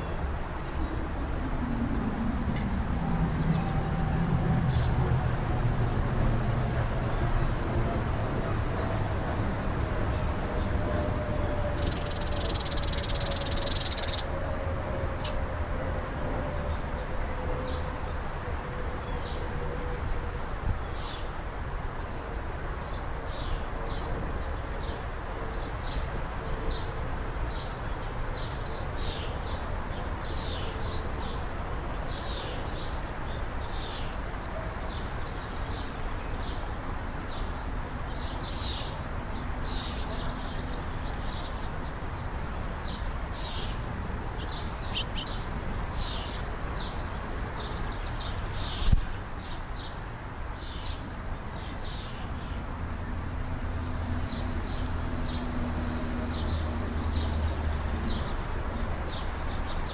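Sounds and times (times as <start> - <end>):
low outdoor background noise: 0.0 - 59.9
small birds chirping: 11.7 - 14.3, 42.8 - 50.0.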